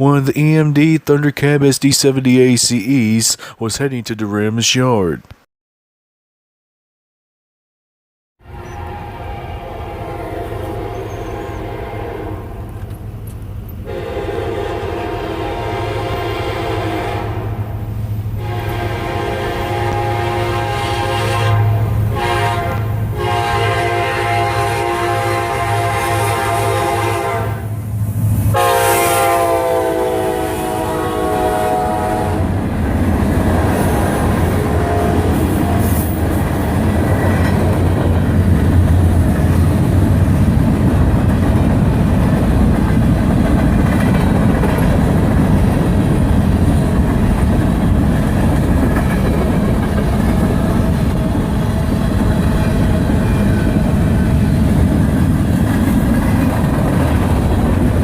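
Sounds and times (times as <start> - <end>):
locomotive horn chord: 8.4 - 12.8, 13.8 - 17.8, 18.4 - 27.8, 28.5 - 32.6, 34.6 - 36.0
freight train rumbling past: 8.4 - 58.0.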